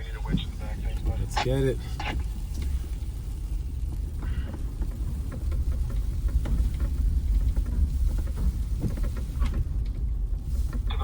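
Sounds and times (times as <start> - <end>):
vehicle engine and tyre rumble: 0.0 - 11.0
knocks and rattles: 3.7 - 11.0.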